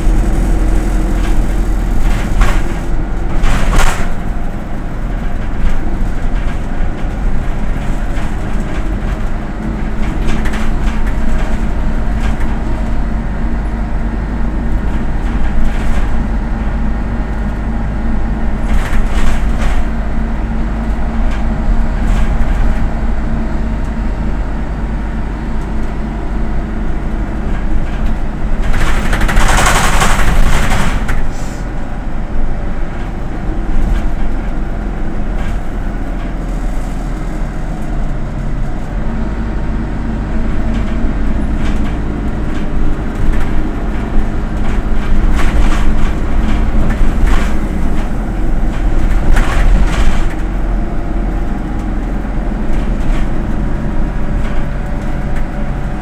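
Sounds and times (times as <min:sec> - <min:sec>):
rattles and knocks: 0:00.0 - 0:24.5, 0:25.3 - 0:31.4, 0:32.1 - 0:56.0
bus engine and road rumble: 0:00.0 - 0:56.0
loud air hiss: 0:31.3 - 0:31.7.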